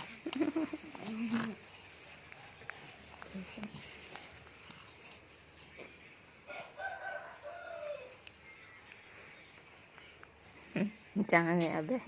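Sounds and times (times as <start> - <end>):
rooster crowing: 6.4 - 8.2.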